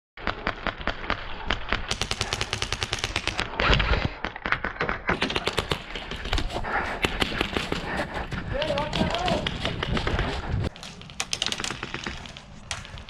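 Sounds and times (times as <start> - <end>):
airsoft guns firing: 0.3 - 3.6, 5.1 - 8.2, 10.8 - 13.0.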